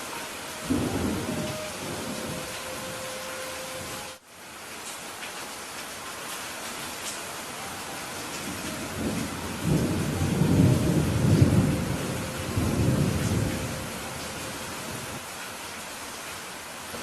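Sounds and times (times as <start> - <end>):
thunder rumbling: 0.0 - 4.2, 8.2 - 15.2
heavy rain: 0.0 - 17.0.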